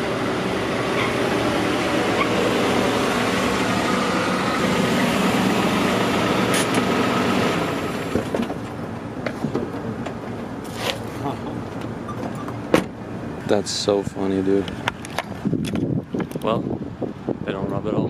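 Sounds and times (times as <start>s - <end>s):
car engine running: 0.0s - 13.2s
tyre and road noise: 0.0s - 17.7s.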